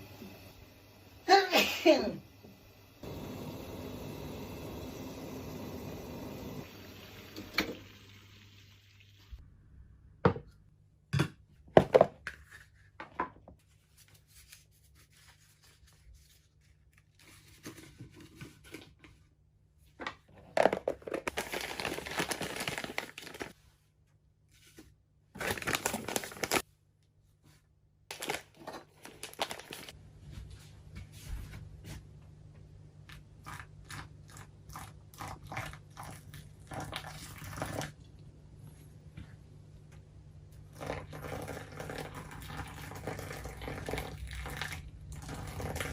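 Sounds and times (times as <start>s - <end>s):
packaging tearing and crinkling: 21.0s - 23.6s, 25.4s - 26.6s, 28.1s - 29.9s.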